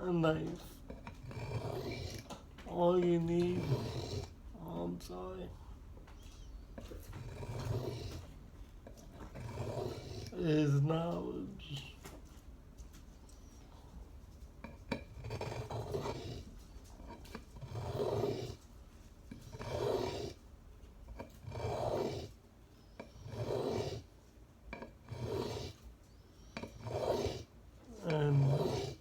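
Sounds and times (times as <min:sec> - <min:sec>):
knife blade scraping sharpening stone: 0:26.6 - 0:27.4.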